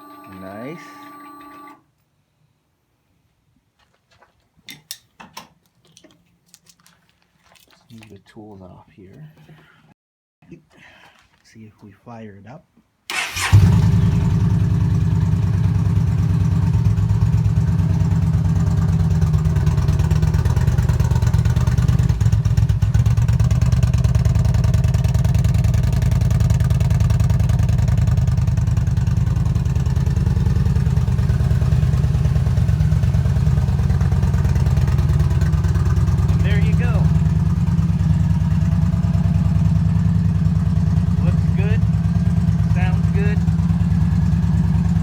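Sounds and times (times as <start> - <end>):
motorcycle engine idling: 13.2 - 45.0.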